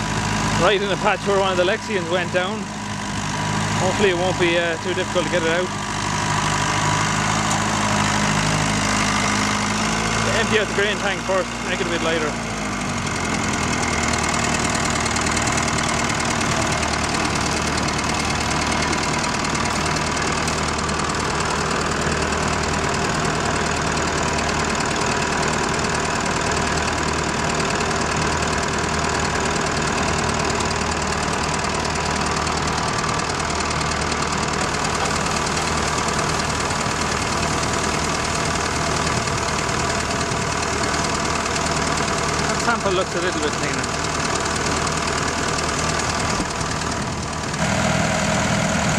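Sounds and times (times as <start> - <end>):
combine harvester diesel engine: 0.0 - 48.9.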